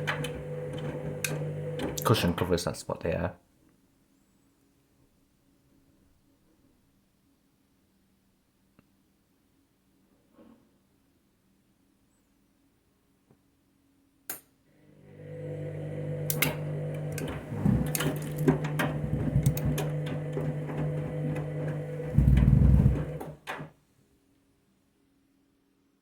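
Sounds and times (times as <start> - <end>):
washing machine click: 0.0 - 2.2, 16.2 - 23.7
washing machine drum humming: 0.0 - 2.5, 15.2 - 23.7.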